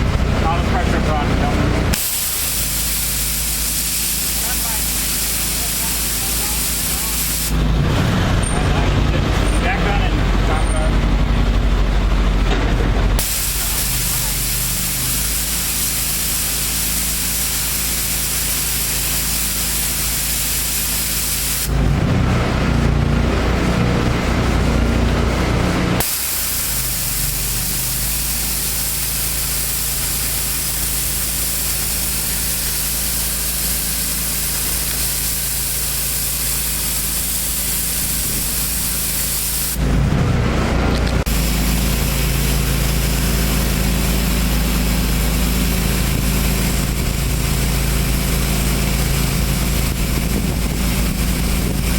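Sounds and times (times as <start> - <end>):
pressure washer water jet hissing: 0.0 - 7.7, 13.1 - 21.8, 26.0 - 39.9, 41.2 - 51.9
gas engine running: 0.0 - 51.9.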